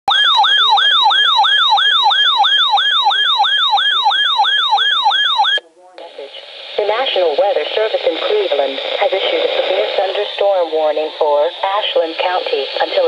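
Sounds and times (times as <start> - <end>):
electronic siren yelp: 0.1 - 5.6.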